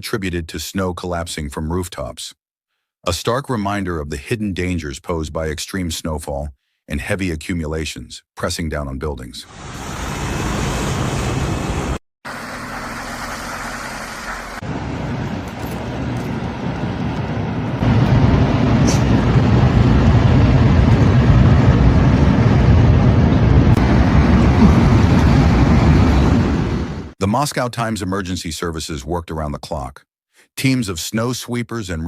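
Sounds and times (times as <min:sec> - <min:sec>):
street traffic rumble and hiss: 0:09.5 - 0:27.1.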